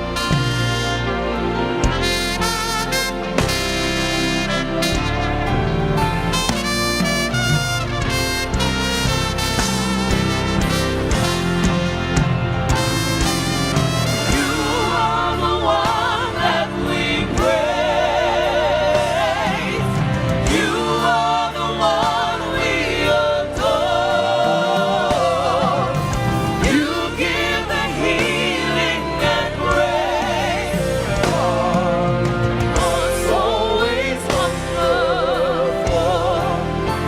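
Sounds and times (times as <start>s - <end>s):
band playing: 0.0s - 37.0s
voices singing with vibrato: 14.1s - 37.0s.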